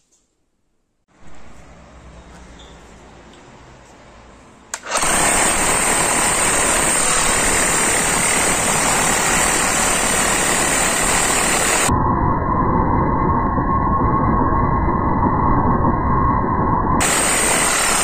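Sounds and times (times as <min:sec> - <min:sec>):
electric demolition hammer running: 0:04.8 - 0:11.9, 0:17.0 - 0:18.0.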